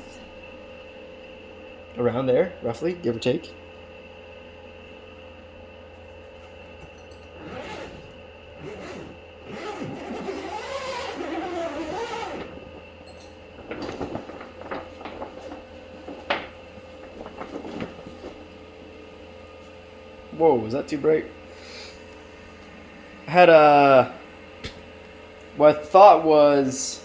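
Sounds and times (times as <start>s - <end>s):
steady background hum: 0.0s - 27.0s
rustling handling noise: 6.0s - 19.8s
wavering scrape: 7.4s - 12.8s.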